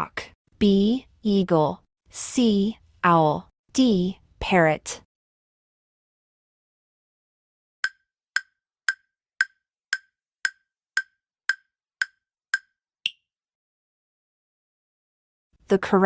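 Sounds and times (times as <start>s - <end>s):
wooden clicks ticking: 7.8s - 12.7s.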